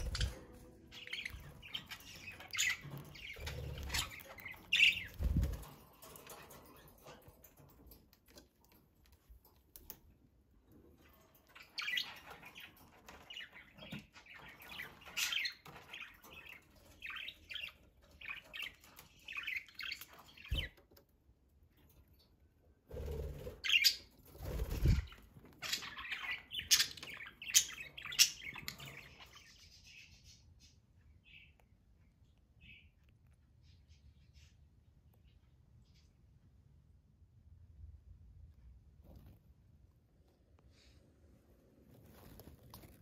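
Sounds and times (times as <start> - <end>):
budgerigars chirping and warbling: 0.0 - 7.7, 11.1 - 20.8, 23.0 - 31.7.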